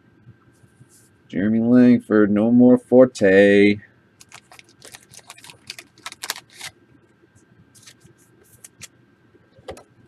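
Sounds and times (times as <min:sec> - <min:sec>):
cards clicking and rustling: 0:04.2 - 0:06.7, 0:07.8 - 0:08.9.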